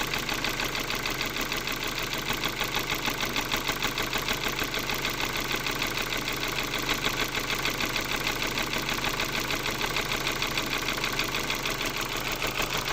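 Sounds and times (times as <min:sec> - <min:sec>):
car engine idling with knock: 0:00.0 - 0:12.9.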